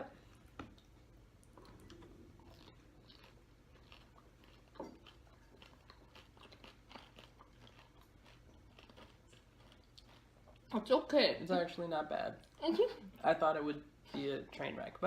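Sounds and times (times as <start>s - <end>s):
crunching and chewing: 0.3s - 10.8s.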